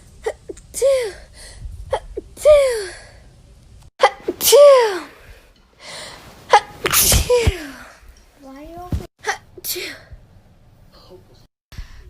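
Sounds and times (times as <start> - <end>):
person sneezing: 6.5 - 7.8.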